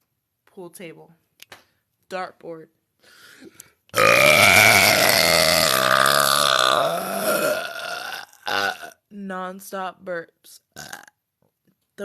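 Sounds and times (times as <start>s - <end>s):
woman belching: 4.0s - 9.0s, 10.8s - 11.2s.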